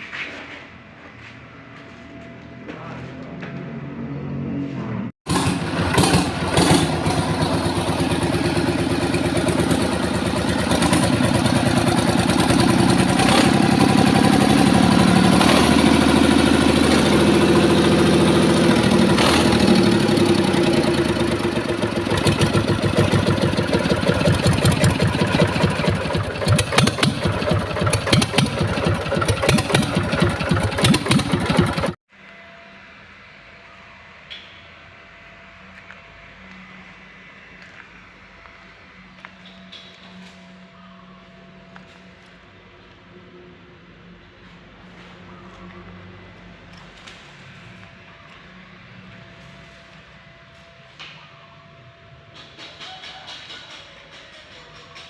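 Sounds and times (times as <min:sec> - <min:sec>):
diesel engine running: 0:05.3 - 0:32.0.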